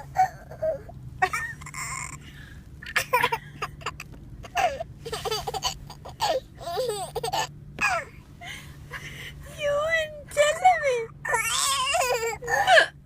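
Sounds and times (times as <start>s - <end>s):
child giggling: 2.9s - 7.5s.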